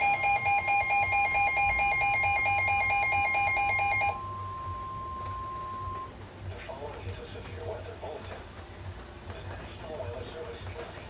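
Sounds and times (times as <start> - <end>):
rapid alarm beeping: 0.0 - 6.2
steady warning alarm tone: 0.0 - 6.2.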